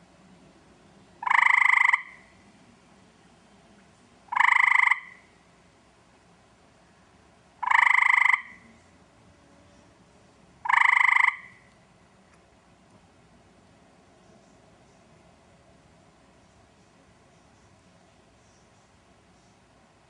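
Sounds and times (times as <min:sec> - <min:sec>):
tree frog trilling: 0:01.2 - 0:02.4, 0:04.3 - 0:05.4, 0:07.6 - 0:08.9, 0:10.6 - 0:11.8.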